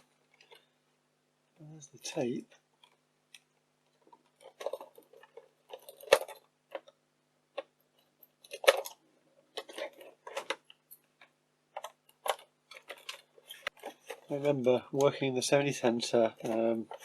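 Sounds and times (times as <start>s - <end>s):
plastic clicks and rattles: 2.8s - 14.3s.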